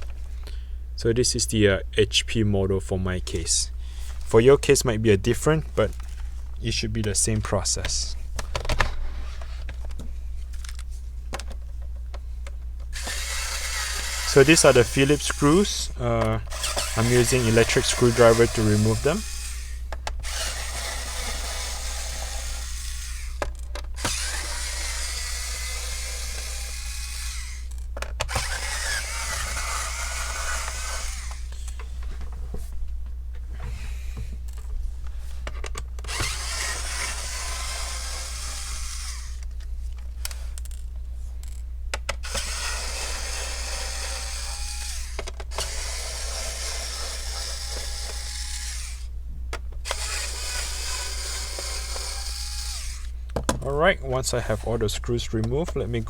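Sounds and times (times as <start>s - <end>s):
electric screwdriver whirring: 12.9s - 31.8s, 36.0s - 39.5s, 42.1s - 49.1s, 49.8s - 53.2s.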